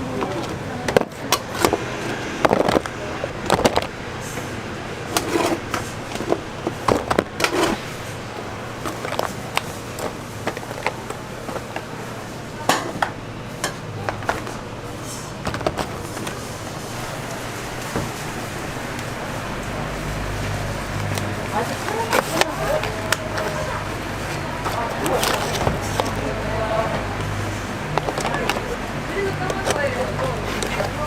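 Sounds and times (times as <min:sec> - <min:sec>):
indistinct voices: 0:00.0 - 0:31.0
steady low hum: 0:00.0 - 0:31.0
utensils clacking on pans: 0:05.1 - 0:08.1.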